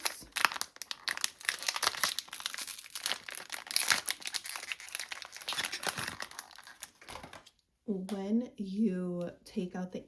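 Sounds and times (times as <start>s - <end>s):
plastic bag crinkling: 0.0s - 7.5s.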